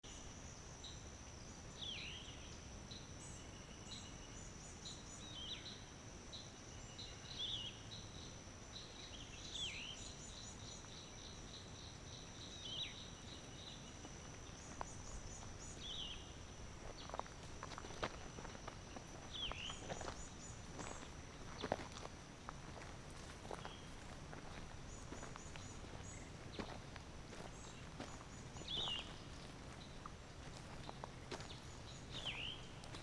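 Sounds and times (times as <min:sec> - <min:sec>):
high-pitched insect trill: 0:00.1 - 0:33.0
birds chirping and calling: 0:23.5 - 0:33.0.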